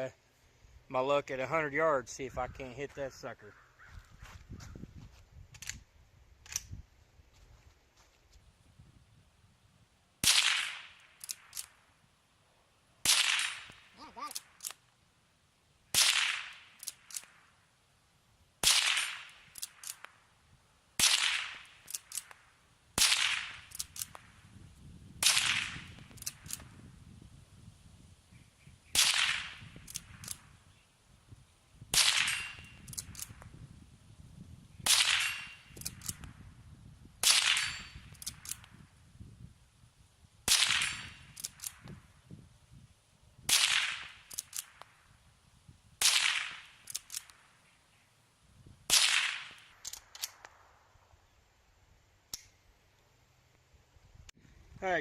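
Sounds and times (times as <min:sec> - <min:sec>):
rifle shots echoing: 0:10.2 - 0:11.8, 0:13.0 - 0:14.8, 0:15.9 - 0:17.5, 0:18.6 - 0:20.1, 0:21.0 - 0:24.3, 0:25.2 - 0:26.6, 0:28.9 - 0:30.4, 0:31.9 - 0:33.4, 0:34.8 - 0:36.2, 0:37.2 - 0:38.6, 0:40.5 - 0:41.9, 0:43.5 - 0:44.9, 0:46.0 - 0:47.6, 0:48.9 - 0:50.7
rifle lever clicking: 0:49.8 - 0:50.5.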